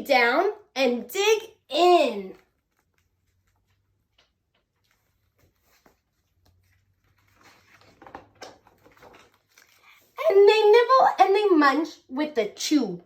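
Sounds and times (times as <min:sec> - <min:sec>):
paper rustling: 0:02.1 - 0:10.2
page being turned: 0:02.2 - 0:10.0.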